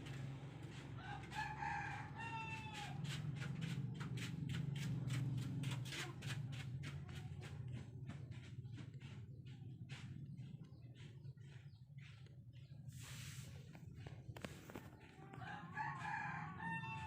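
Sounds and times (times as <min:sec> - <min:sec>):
rooster crowing: 0:00.7 - 0:03.1, 0:15.2 - 0:17.0.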